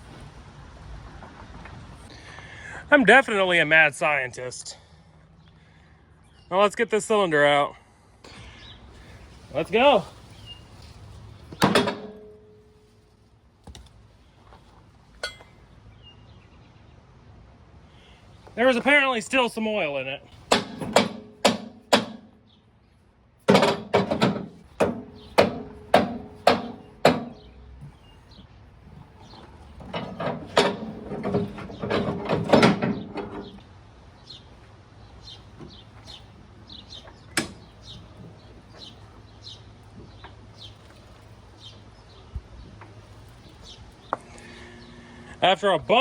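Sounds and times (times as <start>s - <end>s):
metal clattering: 11.5s - 12.9s, 20.3s - 22.4s, 23.4s - 28.0s, 29.0s - 33.6s
low steady hum: 18.5s - 46.0s
hammer striking metal: 20.5s - 22.4s, 23.5s - 27.5s.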